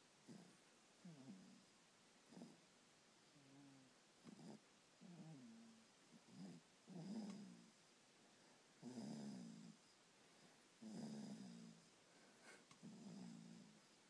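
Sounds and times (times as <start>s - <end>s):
person snoring faintly: 3.3s - 7.7s, 8.8s - 13.9s.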